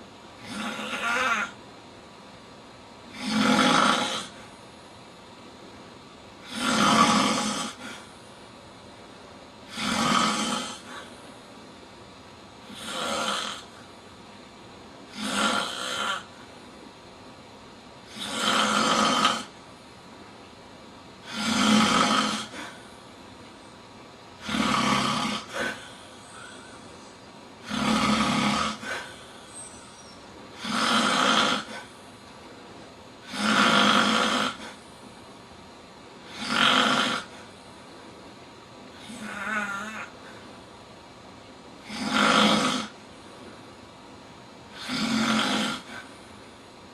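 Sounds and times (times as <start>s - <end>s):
man snoring loudly: 0.4s - 1.6s, 3.1s - 4.5s, 6.4s - 8.1s, 9.7s - 11.1s, 12.7s - 13.8s, 15.1s - 16.4s, 18.1s - 19.6s, 21.2s - 22.8s, 24.4s - 26.8s, 27.6s - 29.5s, 30.6s - 31.9s, 33.2s - 34.8s, 36.2s - 37.5s, 39.0s - 40.1s, 41.8s - 43.0s, 44.7s - 46.1s
quiet breathing: 9.6s - 11.4s, 21.2s - 23.8s, 24.4s - 30.9s, 38.9s - 40.7s.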